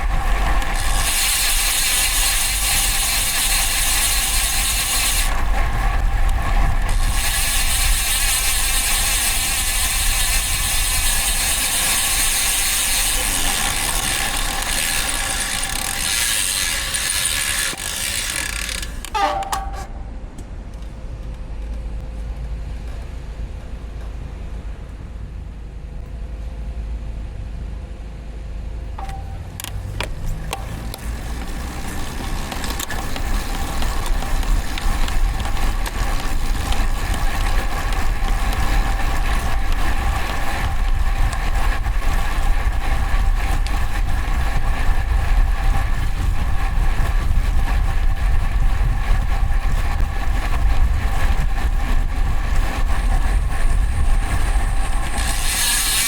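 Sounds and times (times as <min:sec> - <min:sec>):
wind rumble on microphone: 0:02.6 - 0:15.6, 0:29.8 - 0:56.0
tyre noise: 0:29.0 - 0:56.0
steady whine: 0:43.8 - 0:56.0.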